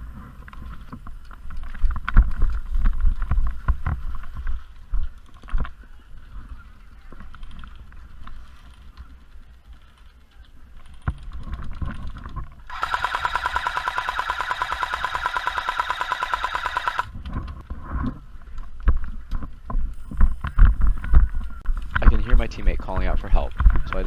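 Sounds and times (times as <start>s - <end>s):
airsoft machine gun firing: 12.7s - 17.1s.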